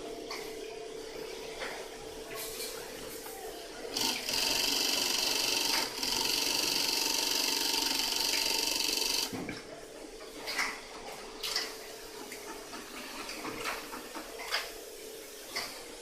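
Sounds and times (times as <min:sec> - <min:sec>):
sewing machine stitching: 0:03.9 - 0:09.3.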